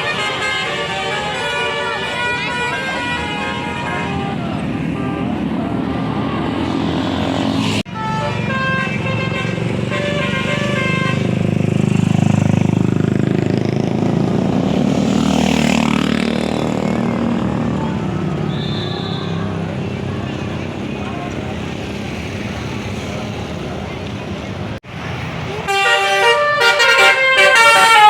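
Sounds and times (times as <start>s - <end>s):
multi-trumpet air horn tune: 0.0s - 5.4s, 7.9s - 11.3s, 25.6s - 28.0s
bus engine passing: 0.0s - 28.0s.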